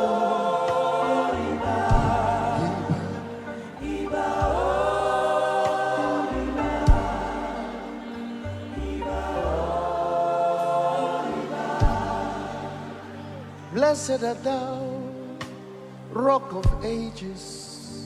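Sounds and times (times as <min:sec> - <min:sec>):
voices holding sustained chords: 0:00.0 - 0:18.0
low bass notes: 0:01.3 - 0:05.4, 0:06.2 - 0:10.2, 0:11.8 - 0:15.1, 0:16.5 - 0:17.7.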